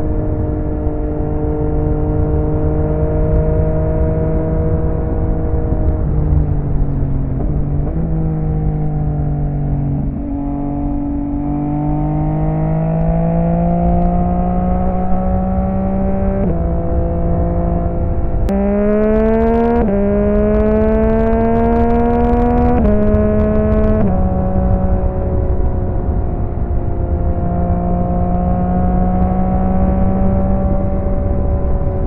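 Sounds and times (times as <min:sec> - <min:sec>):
motorcycle engine running: 0:02.1 - 0:32.0.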